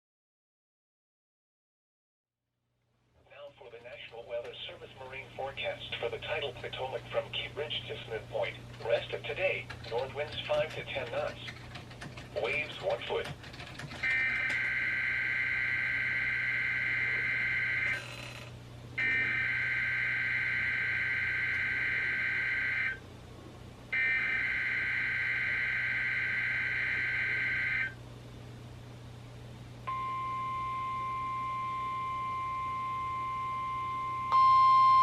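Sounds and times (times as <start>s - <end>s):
steady warning alarm tone: 14.0s - 18.4s, 19.0s - 23.0s, 23.9s - 28.0s, 29.9s - 35.0s.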